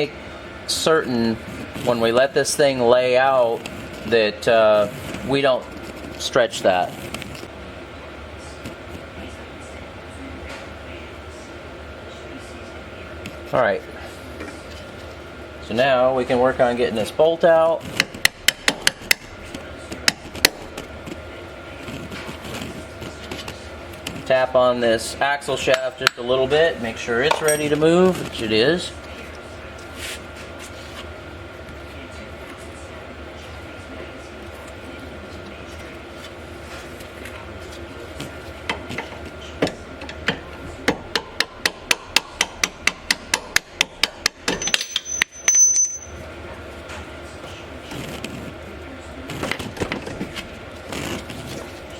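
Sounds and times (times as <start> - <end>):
high metallic ring: 27.3 - 28.0, 44.4 - 46.3
hammer striking steel: 41.1 - 46.2.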